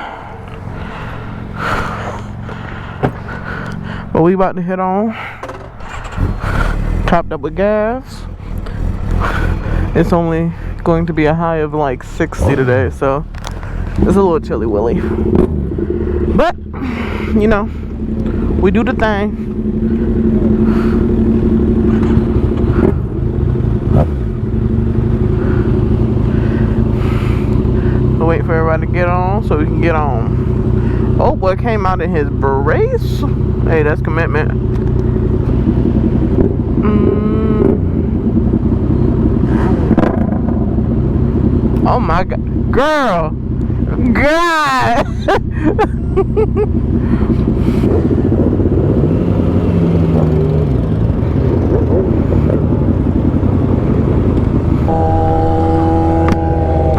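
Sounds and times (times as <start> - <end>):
motorcycle engine idling: 0.0 - 56.9
short sound dropping in pitch: 54.8 - 56.9.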